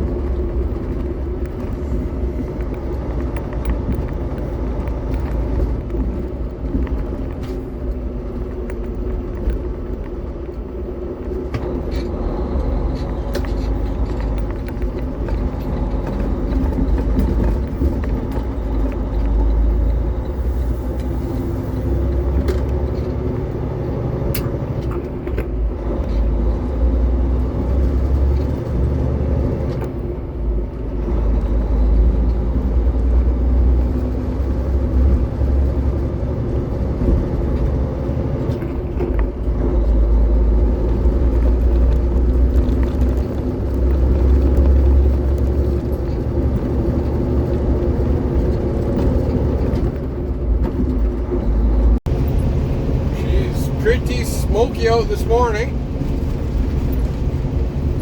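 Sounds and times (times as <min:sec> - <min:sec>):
road rumble: 0:00.0 - 0:58.0
truck diesel engine running: 0:30.0 - 0:58.0.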